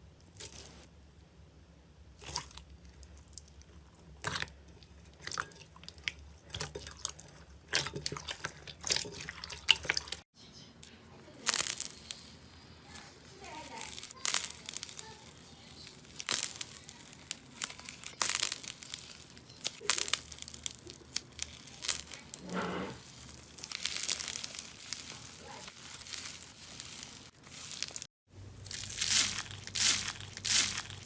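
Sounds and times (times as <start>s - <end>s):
slime crackling and popping: 11.3s - 22.4s, 23.0s - 31.0s.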